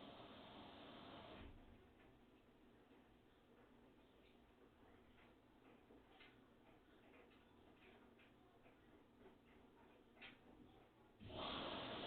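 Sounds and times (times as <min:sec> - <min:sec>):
washing machine hiss: 0:00.0 - 0:01.5, 0:11.2 - 0:12.0.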